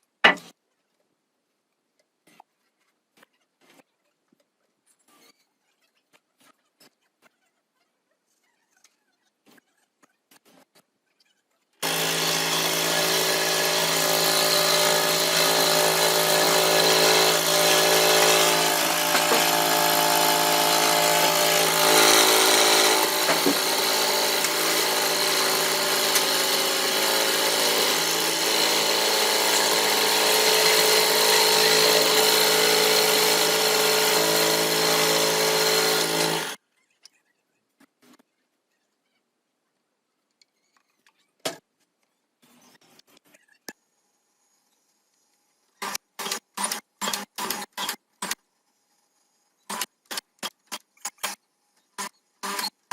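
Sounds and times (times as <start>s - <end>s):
electric power tool running: 11.8s - 36.6s.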